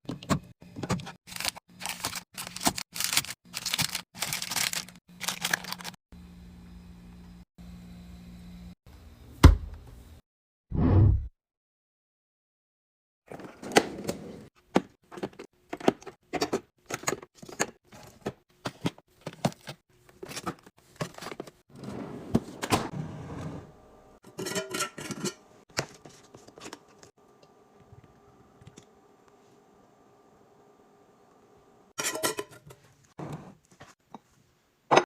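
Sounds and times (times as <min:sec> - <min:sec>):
packages rustling: 0:01.3 - 0:06.0.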